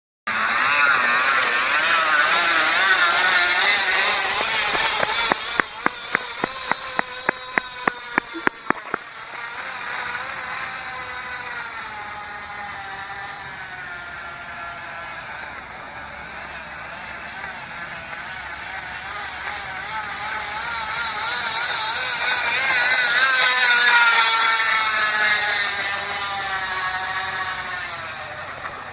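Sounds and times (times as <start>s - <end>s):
motorbike high whining engine: 0.3s - 28.9s
bike regular clicking: 3.0s - 9.5s.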